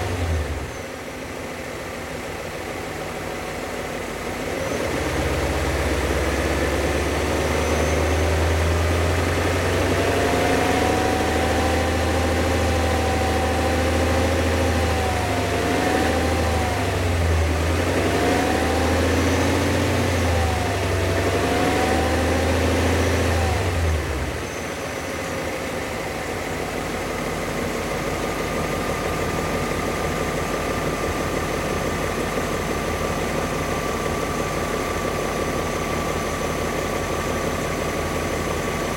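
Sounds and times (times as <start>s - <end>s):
car engine revving: 4.4s - 38.9s.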